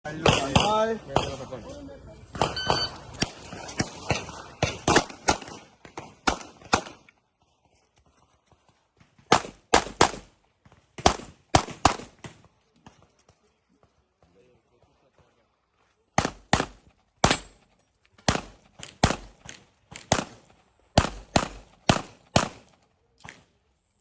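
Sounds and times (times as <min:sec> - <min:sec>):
handgun shots: 0:16.2 - 0:17.6.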